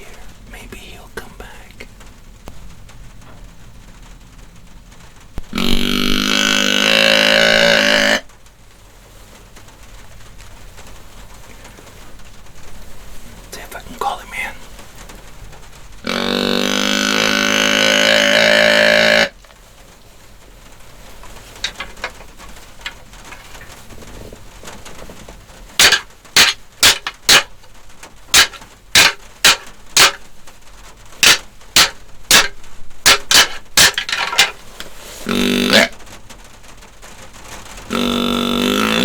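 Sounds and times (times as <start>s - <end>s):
reedy deer call: 5.6s - 8.3s, 16.0s - 19.4s, 35.2s - 36.0s, 37.9s - 39.0s
sharp clacks: 21.6s - 23.8s, 25.8s - 30.4s, 31.2s - 34.6s.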